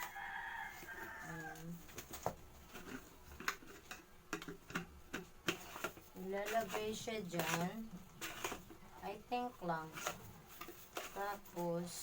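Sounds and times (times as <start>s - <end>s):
plastic parts clicking and knocking: 2.0s - 6.8s.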